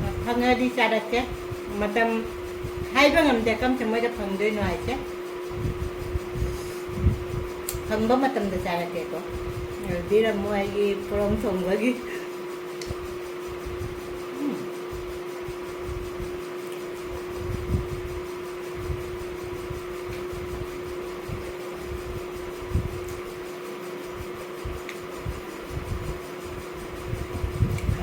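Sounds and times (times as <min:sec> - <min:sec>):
machine hum: 0:00.0 - 0:28.0
soft low thumps: 0:01.3 - 0:08.6.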